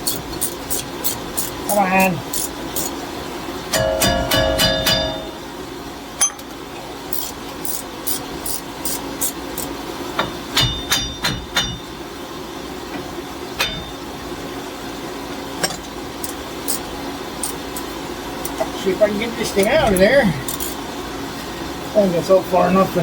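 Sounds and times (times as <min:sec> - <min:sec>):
heater humming: 0:00.0 - 0:23.0
ringing metal clinks: 0:03.8 - 0:05.4, 0:06.2 - 0:06.5.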